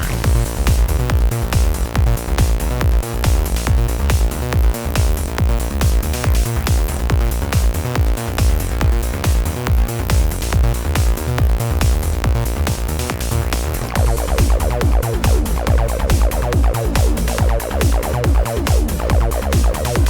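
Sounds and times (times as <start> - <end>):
electronic dance music: 0.0 - 20.0.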